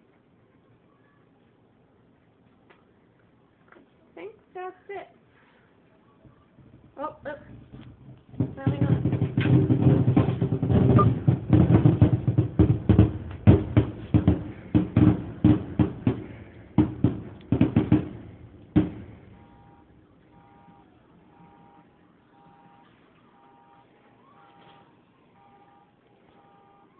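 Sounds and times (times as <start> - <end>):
fireworks bangs: 6.2 - 26.9
faint electronic beeps: 19.2 - 26.9.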